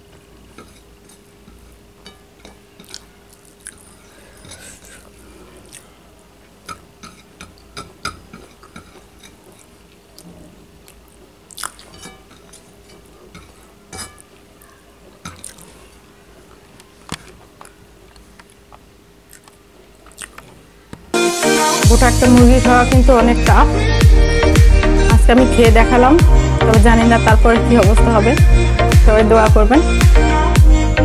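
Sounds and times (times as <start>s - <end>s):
faint steady hum: 0.0s - 31.0s
eating clicks and wet smacks: 2.8s - 3.9s, 10.2s - 12.0s, 15.3s - 15.8s, 17.6s - 20.6s.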